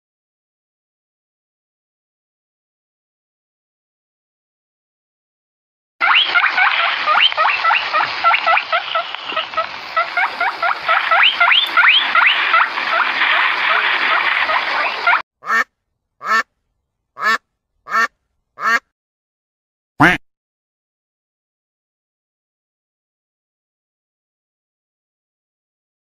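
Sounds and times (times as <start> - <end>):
single animal calls: 6.0 - 13.0
chorus of animal calls: 6.0 - 15.2.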